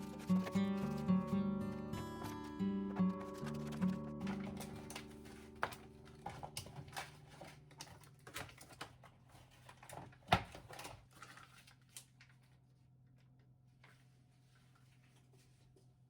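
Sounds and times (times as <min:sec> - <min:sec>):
guitar music: 0:00.0 - 0:05.6.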